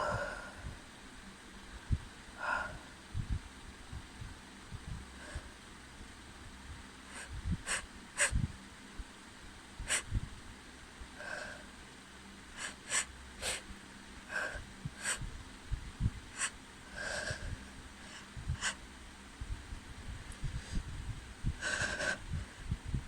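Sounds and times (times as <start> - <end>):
person sniffing and breathing: 0.0 - 0.8, 7.1 - 8.4, 9.8 - 10.2, 11.2 - 11.7, 12.6 - 15.3, 16.3 - 18.8, 20.4 - 20.9, 21.6 - 22.7
electric fan humming: 0.0 - 23.0.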